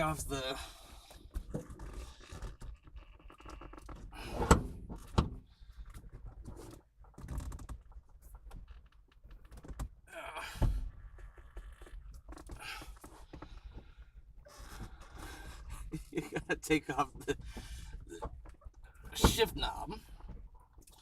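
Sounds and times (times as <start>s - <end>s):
car shifter clicks and rattles: 17.2s - 21.0s.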